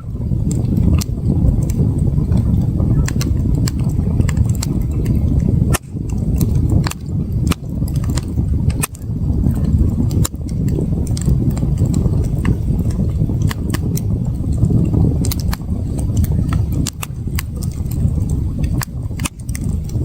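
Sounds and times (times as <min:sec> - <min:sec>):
campfire crackling: 0:00.0 - 0:20.0
low rumble: 0:00.0 - 0:20.0.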